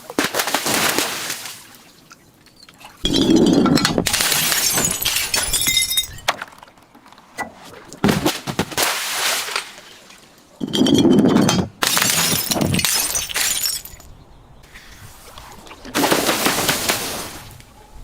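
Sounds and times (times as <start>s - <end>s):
glass bottle breaking: 3.0s - 6.3s, 10.6s - 14.1s
glass shards clinking: 3.0s - 6.3s, 10.6s - 14.1s
glass crunching: 3.0s - 6.6s, 10.6s - 14.1s.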